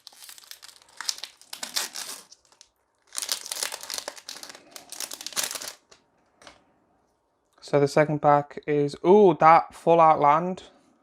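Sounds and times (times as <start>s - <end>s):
foil wrapper crinkling: 0.0s - 6.0s.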